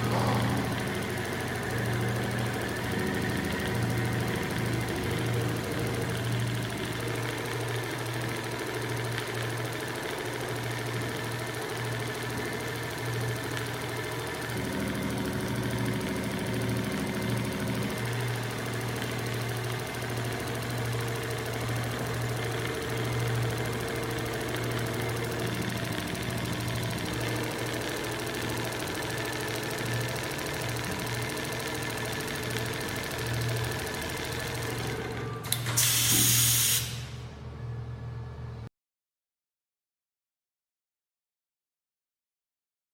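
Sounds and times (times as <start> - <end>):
sewing machine running: 0.0 - 37.2
loud hiss: 35.7 - 37.2.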